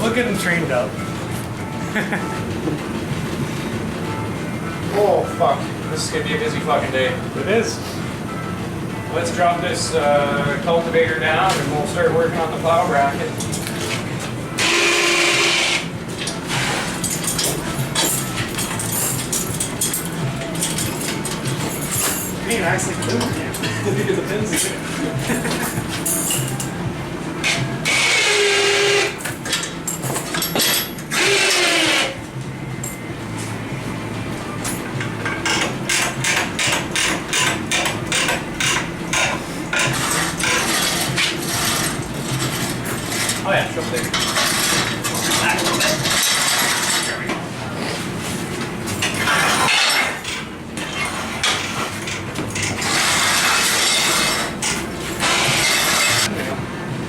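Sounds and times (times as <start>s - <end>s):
rasping ratchet-like mechanical noise: 27.4s - 32.2s, 35.4s - 43.5s, 44.1s - 47.2s, 52.6s - 56.3s
handheld power tool running: 27.8s - 29.2s, 31.1s - 32.2s.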